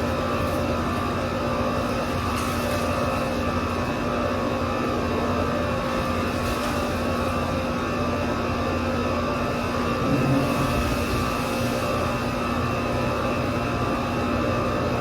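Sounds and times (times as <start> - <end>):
machine drone: 9.8 - 11.8.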